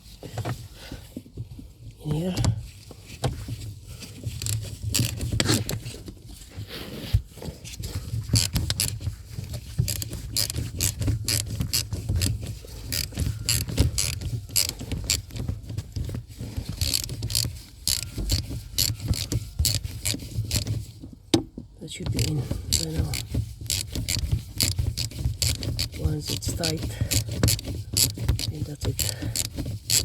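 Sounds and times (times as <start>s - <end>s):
ratchet wrench clicking: 8.4s - 8.9s, 9.9s - 15.4s, 16.7s - 20.7s, 22.1s - 30.0s.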